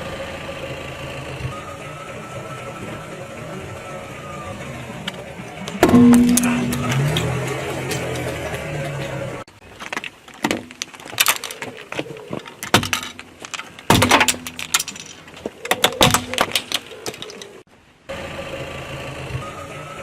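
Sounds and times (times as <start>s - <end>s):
eyeglasses cracking under tyre: 9.7s - 17.7s.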